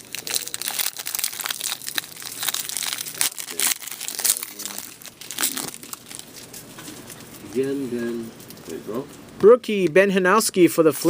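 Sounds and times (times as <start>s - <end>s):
card pack wrappers crinkling: 0.0s - 7.8s.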